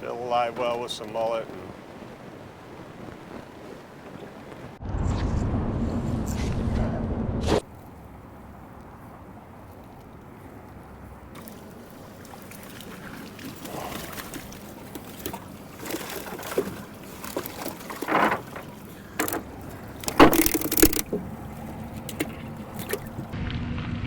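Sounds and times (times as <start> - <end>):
low hum: 4.8 - 24.0
gear knocking and clattering: 17.4 - 23.4.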